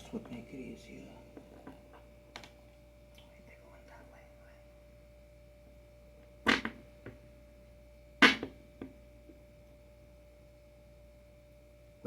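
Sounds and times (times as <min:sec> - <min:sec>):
sharp knocks of hard parts: 0:06.5 - 0:07.2, 0:08.2 - 0:09.0.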